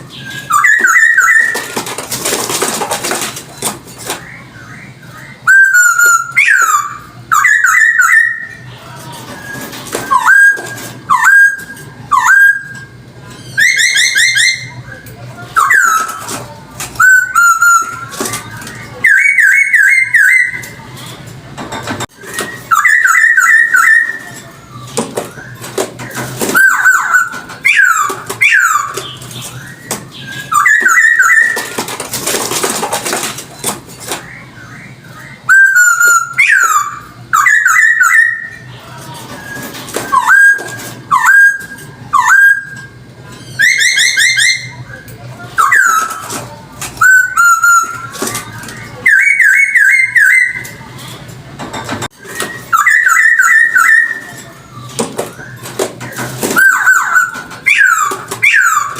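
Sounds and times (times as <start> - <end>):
harsh noisy bird call: 0.0 - 20.9, 22.2 - 51.0, 52.2 - 58.9
bird singing whistled phrases: 0.1 - 1.8, 4.2 - 8.6, 18.8 - 20.8, 22.2 - 25.7, 26.5 - 31.8, 34.3 - 38.7, 47.0 - 50.8, 52.2 - 54.4, 56.6 - 58.9.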